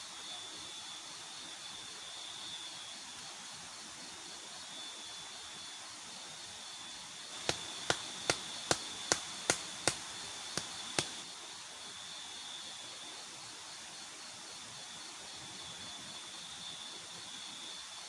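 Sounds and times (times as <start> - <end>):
high insect drone: 0.0 - 18.0
sharp clicks: 7.4 - 11.2.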